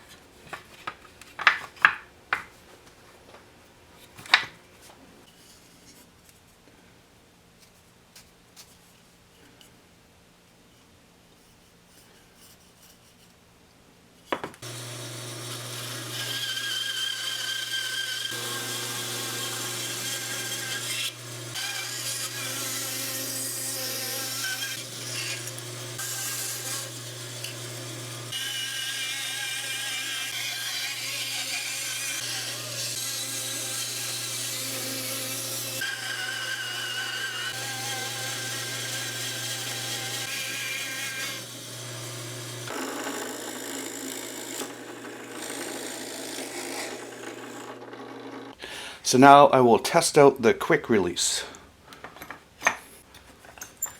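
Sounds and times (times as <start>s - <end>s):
power tool motor cutting wood: 14.6s - 48.6s.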